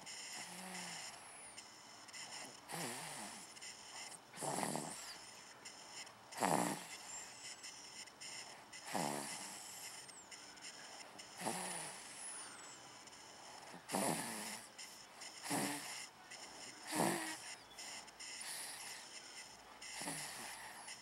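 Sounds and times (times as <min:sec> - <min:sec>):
person snoring: 0:00.2 - 0:01.2, 0:02.3 - 0:05.3, 0:06.4 - 0:07.1, 0:08.8 - 0:10.0, 0:11.3 - 0:12.5, 0:13.2 - 0:14.7, 0:15.4 - 0:19.1, 0:19.8 - 0:21.0.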